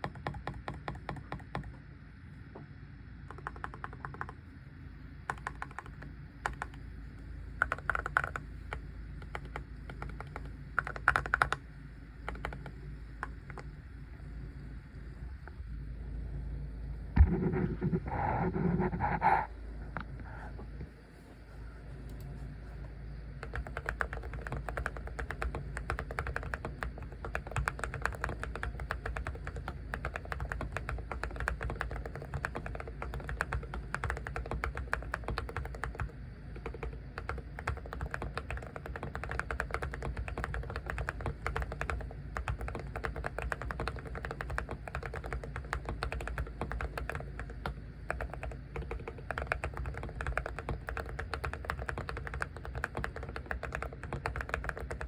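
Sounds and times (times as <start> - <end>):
keyboard typing clicks: 0.0 - 1.8, 3.3 - 4.4, 5.3 - 6.9, 7.6 - 13.8, 23.4 - 55.0.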